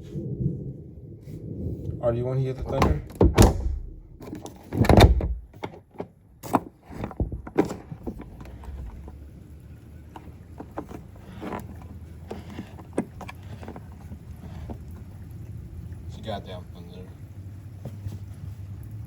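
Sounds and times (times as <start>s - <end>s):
distant thunder rumbling: 0.0s - 5.5s
thump: 2.6s - 5.5s
sharp clicks and knocks: 2.6s - 9.2s.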